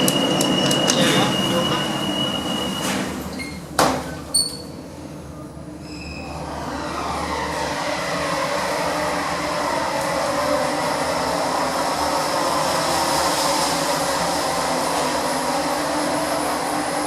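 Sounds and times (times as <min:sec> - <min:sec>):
train rumble and whine: 0:00.0 - 0:17.0.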